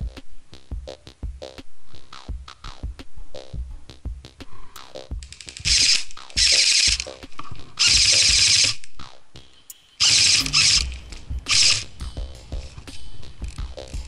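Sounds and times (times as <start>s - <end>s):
airsoft guns firing full auto: 7.8s - 8.8s, 10.0s - 10.8s.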